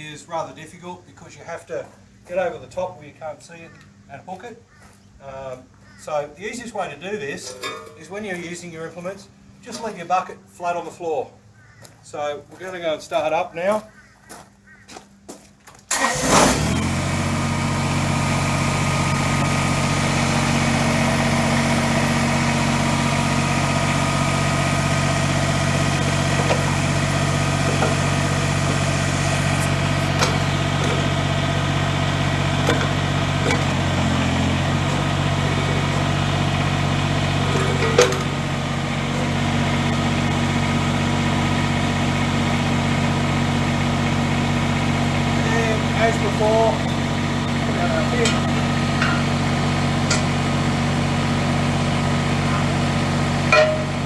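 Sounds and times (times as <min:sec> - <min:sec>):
diesel tractor engine running: 0:06.4 - 0:10.5, 0:15.8 - 0:54.0
sharp engine knocks: 0:07.4 - 0:08.4, 0:18.6 - 0:43.3, 0:44.0 - 0:54.0.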